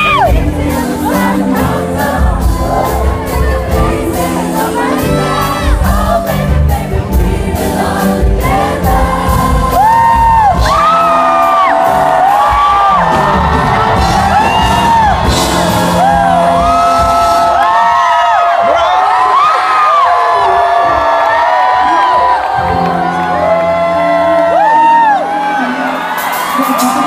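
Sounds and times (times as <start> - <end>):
woman singing: 0.0 - 12.0, 23.9 - 27.0
crowd noise: 0.0 - 27.0
live band accompaniment: 0.0 - 27.0.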